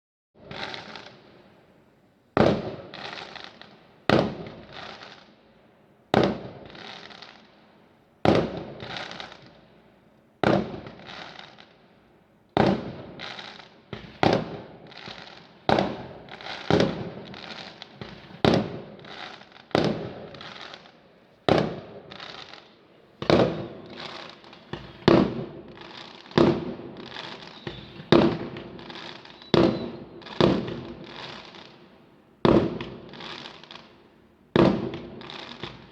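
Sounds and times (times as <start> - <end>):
fireworks bangs and crackle: 0.4 - 1.7, 2.3 - 5.5, 6.1 - 9.8, 10.4 - 35.9.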